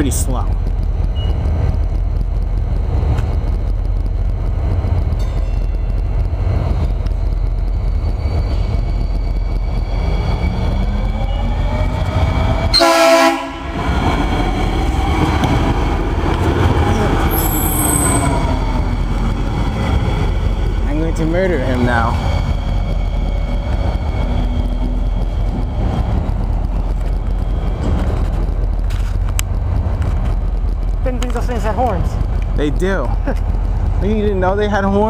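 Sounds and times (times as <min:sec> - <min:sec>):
train running rumble: 0:00.0 - 0:35.0
train horn blast: 0:12.7 - 0:13.8
high-pitched squeal: 0:13.9 - 0:26.0.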